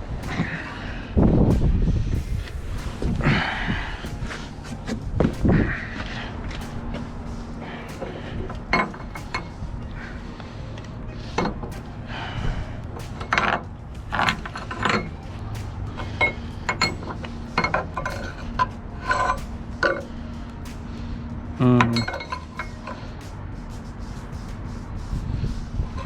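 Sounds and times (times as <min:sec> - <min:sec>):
steady low hum: 0:00.0 - 0:26.0
metal hardware clanking: 0:16.0 - 0:20.1, 0:21.8 - 0:23.0.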